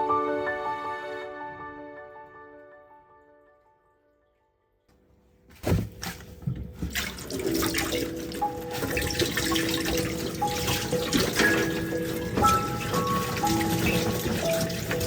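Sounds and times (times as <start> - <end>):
tap water running into sink: 6.8 - 15.0.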